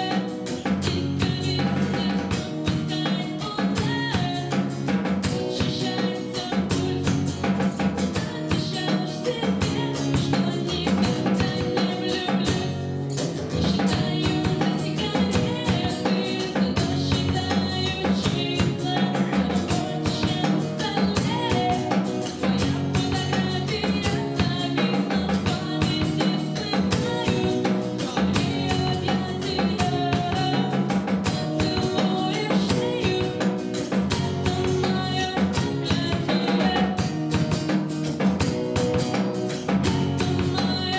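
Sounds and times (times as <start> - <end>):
guitar and drum kit playing: 0.0 - 40.9
person singing: 13.9 - 37.1.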